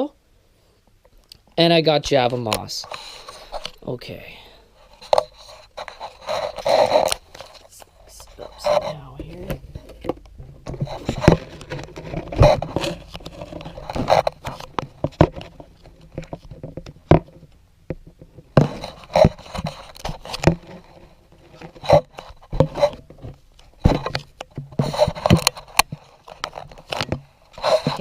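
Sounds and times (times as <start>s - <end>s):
objects knocking on hard surface: 9.2s - 20.7s.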